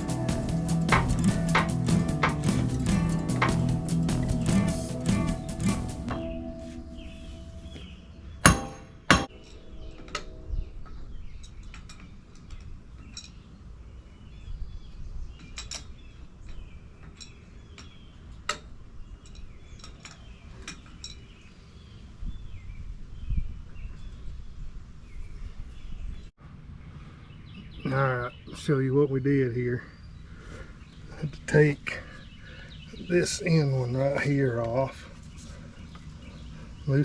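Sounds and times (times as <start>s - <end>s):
metal-on-metal strikes: 0.0s - 10.3s.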